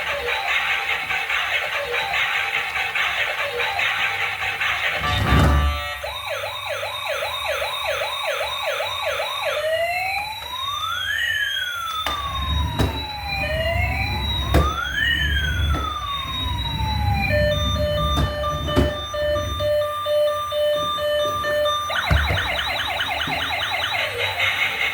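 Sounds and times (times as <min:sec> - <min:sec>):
toy siren yelping and wailing: 0:00.0 - 0:24.9.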